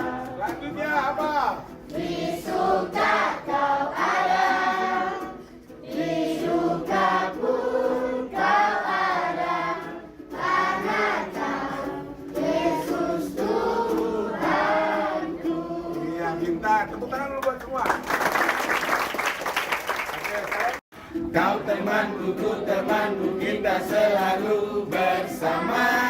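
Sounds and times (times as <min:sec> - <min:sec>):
choir singing: 0:00.0 - 0:00.5, 0:01.9 - 0:16.6, 0:21.2 - 0:26.0.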